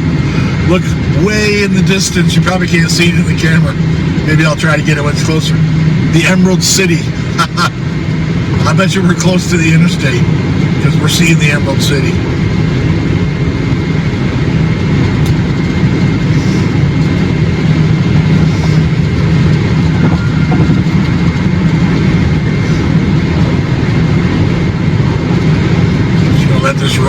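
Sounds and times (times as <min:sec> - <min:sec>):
vehicle engine drone: 0:00.0 - 0:27.0.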